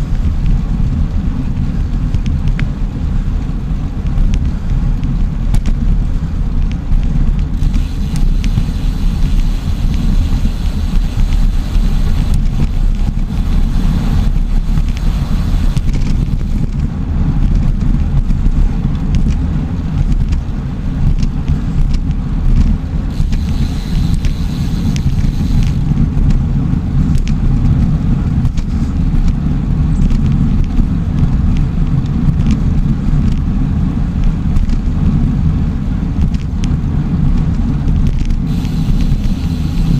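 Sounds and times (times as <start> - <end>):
wind rumbling on microphone: 0.0 - 39.9
faint clicks and ticks: 4.0 - 19.4, 21.1 - 26.4
high hiss: 7.6 - 16.6, 23.1 - 25.8, 38.5 - 39.9.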